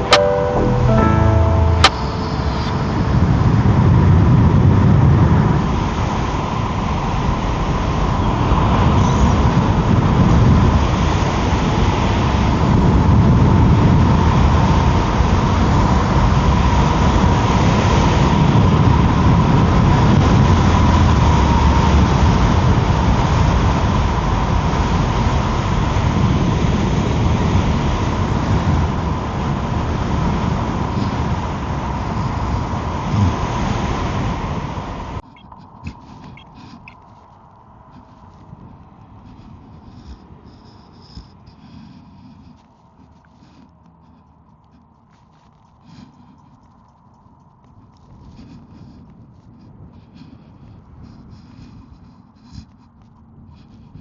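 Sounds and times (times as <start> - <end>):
electric scooter high whine: 0.0 - 35.5
wind buffeting microphone: 2.7 - 54.0.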